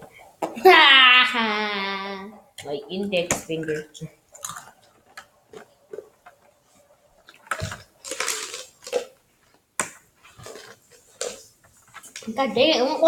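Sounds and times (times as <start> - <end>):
ice cubes rattling in a cup: 7.6 - 9.1.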